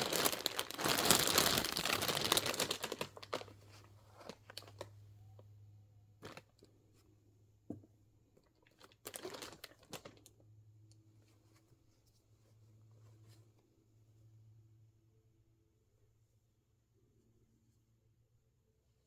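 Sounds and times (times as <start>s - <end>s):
plastic wrap and cardboard crinkling: 0.0s - 4.9s, 6.2s - 6.5s, 8.7s - 10.3s
faint low hum: 0.0s - 19.0s.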